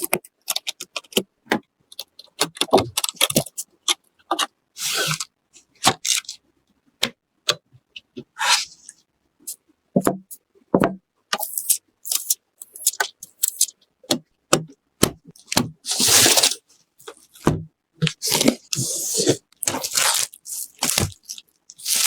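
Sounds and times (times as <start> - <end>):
computer parts clicking and knocking: 0.0 - 4.5
ripping: 15.9 - 16.6, 18.1 - 22.0.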